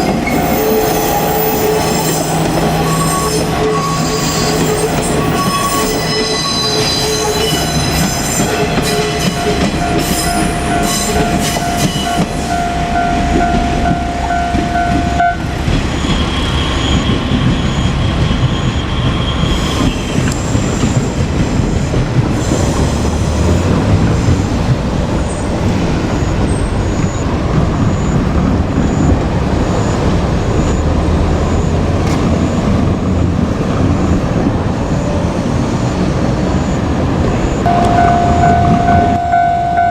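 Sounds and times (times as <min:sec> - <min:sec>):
train wheels squealing: 0:00.0 - 0:23.8, 0:25.2 - 0:32.7
rumble of engines and rails: 0:00.0 - 0:39.9.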